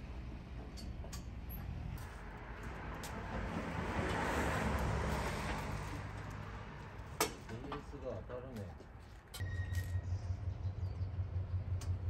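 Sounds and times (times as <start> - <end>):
vehicle passing by: 2.0 - 7.2.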